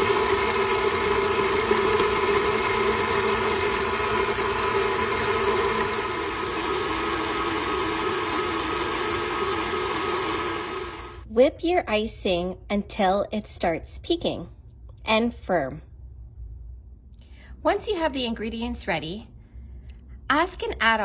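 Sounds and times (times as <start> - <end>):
electric mixer whipping: 0.0 - 11.2.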